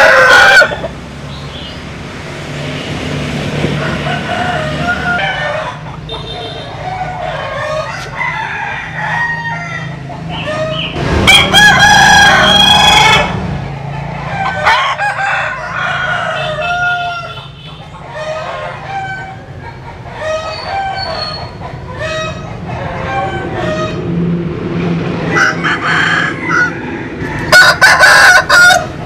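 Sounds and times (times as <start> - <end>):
rooster crowing: 0.0 - 1.0, 3.8 - 5.9, 6.8 - 13.4, 14.2 - 17.4, 25.2 - 29.0
chickens clucking: 3.6 - 8.4, 9.1 - 11.5, 13.0 - 24.2.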